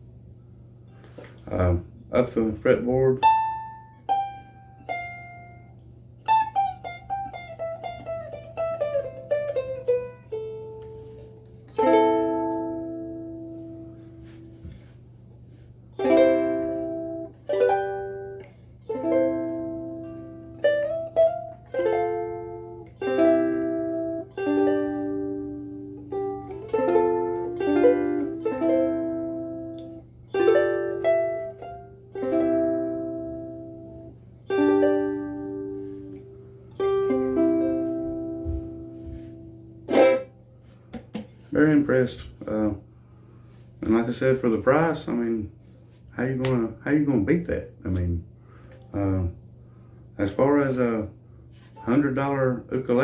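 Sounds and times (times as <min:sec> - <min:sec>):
steady low hum: 0:00.0 - 0:53.0
ukulele chords strummed: 0:01.1 - 0:14.9, 0:15.5 - 0:42.7, 0:51.7 - 0:53.0.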